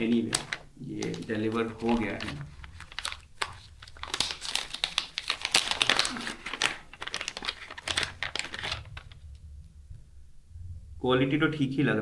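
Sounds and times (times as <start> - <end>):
plastic packaging crinkling: 0.0 - 9.5.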